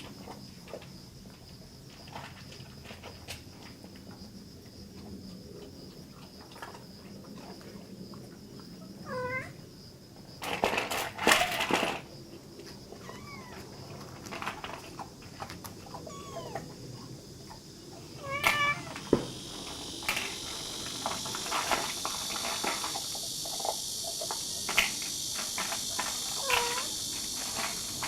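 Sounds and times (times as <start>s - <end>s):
kitten meowing: 13.0s - 13.6s, 16.0s - 16.7s, 18.2s - 19.0s.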